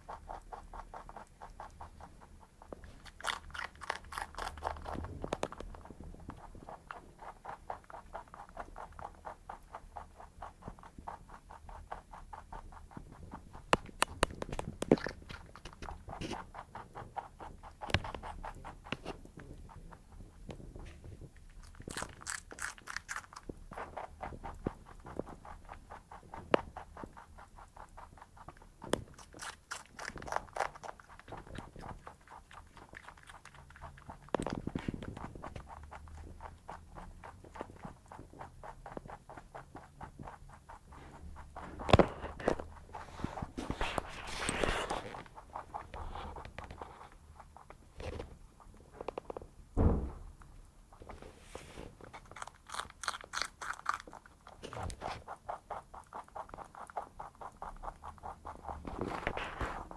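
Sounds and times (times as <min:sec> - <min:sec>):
rabbit clicking: 0:00.0 - 0:49.6, 0:52.0 - 0:59.9
low thud: 0:49.8 - 0:50.4.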